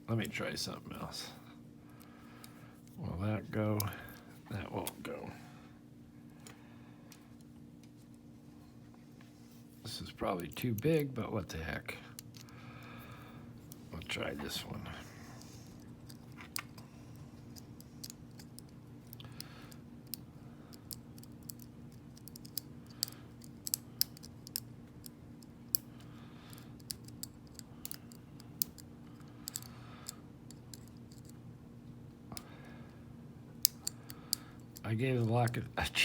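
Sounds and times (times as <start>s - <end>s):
steady low hum: 0.0s - 36.0s.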